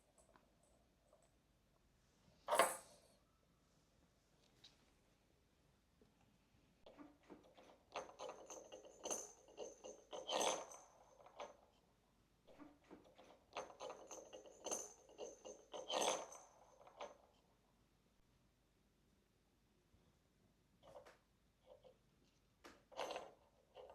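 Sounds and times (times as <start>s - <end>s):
cat toy jingling and rattling: 7.9s - 11.6s, 13.5s - 17.2s.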